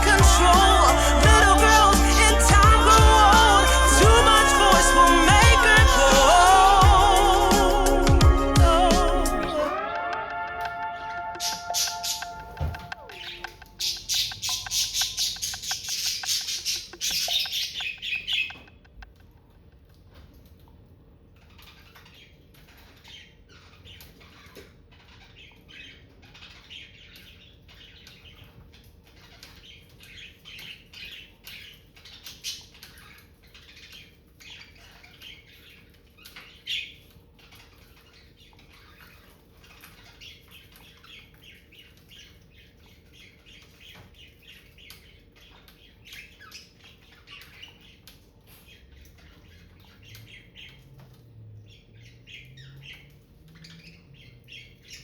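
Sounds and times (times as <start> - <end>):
budgerigars chirping: 11.8 - 18.7.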